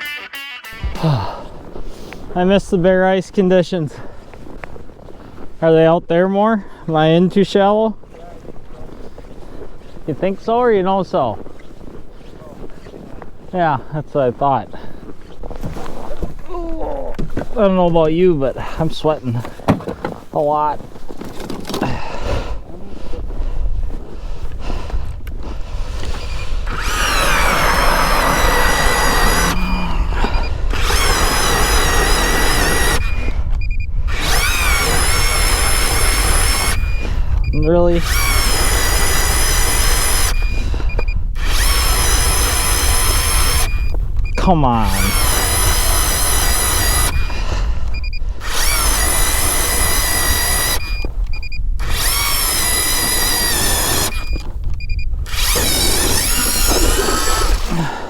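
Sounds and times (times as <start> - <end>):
motor whining: 26.0 - 58.0.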